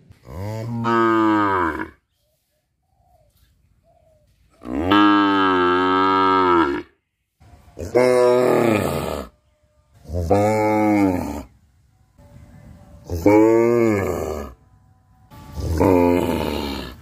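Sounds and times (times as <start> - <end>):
cow mooing: 0.2 - 2.0, 4.6 - 6.9, 7.8 - 9.4, 10.0 - 11.5, 13.0 - 14.6, 15.5 - 17.0.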